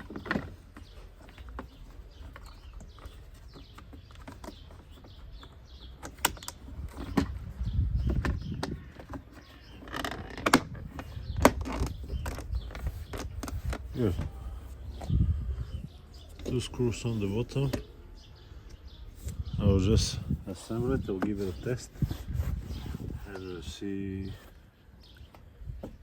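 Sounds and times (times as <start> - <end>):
sharp clicks and knocks of parts: 0.0 - 7.4
faint birdsong: 0.0 - 26.0
low rumbling handling noise: 0.0 - 26.0.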